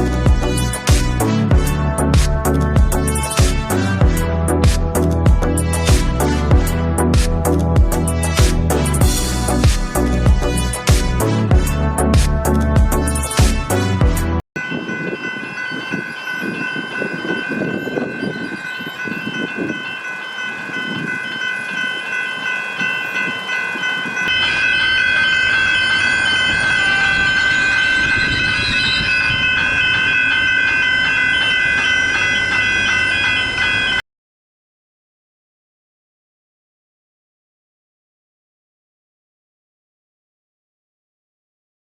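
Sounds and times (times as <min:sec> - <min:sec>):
level crossing bells ringing: 0:14.6 - 0:34.0
train rumbling past: 0:14.6 - 0:34.0.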